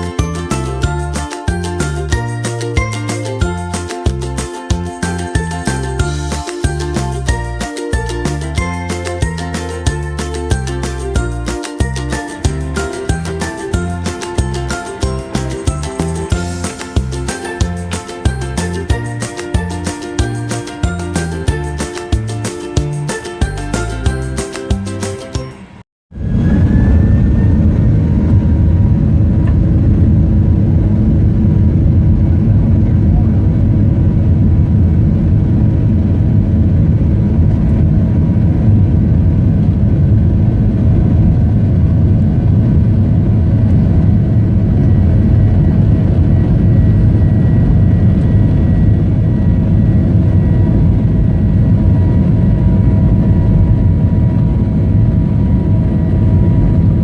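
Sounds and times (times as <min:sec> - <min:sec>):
whining engine tones: 0:00.0 - 0:57.0
jet engine rush in cabin: 0:26.1 - 0:57.0.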